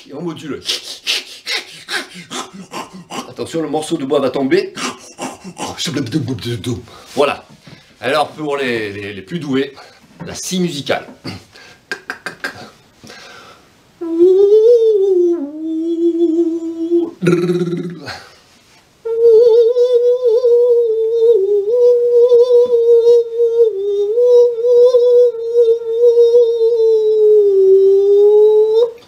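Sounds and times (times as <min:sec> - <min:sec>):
man imitating a musical saw: 0:00.5 - 0:03.4, 0:04.7 - 0:05.9, 0:11.9 - 0:12.8, 0:14.0 - 0:18.2, 0:19.1 - 0:29.0.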